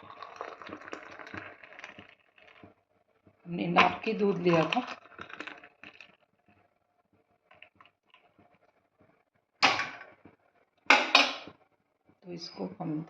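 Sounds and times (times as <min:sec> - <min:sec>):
loud utensil clatter: 0:09.6 - 0:10.0, 0:10.9 - 0:11.5
utensils clicking and tapping: 0:10.9 - 0:11.5.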